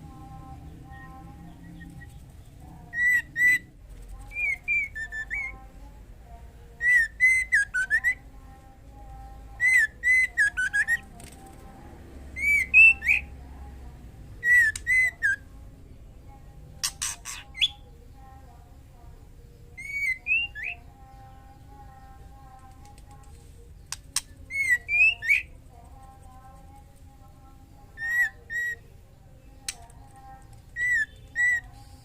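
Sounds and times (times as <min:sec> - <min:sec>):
bird whistling calls: 0:03.0 - 0:03.7, 0:06.8 - 0:08.2, 0:14.4 - 0:15.4, 0:19.8 - 0:20.8.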